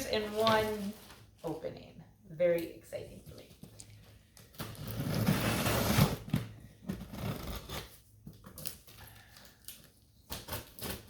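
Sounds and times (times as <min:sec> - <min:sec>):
cardboard packaging rustling: 0:00.0 - 0:01.6.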